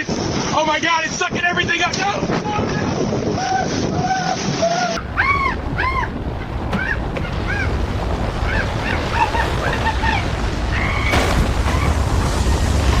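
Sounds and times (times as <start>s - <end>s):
low rumbling tornado wind: 0.0s - 13.0s
high-pitched cries: 3.5s - 7.7s.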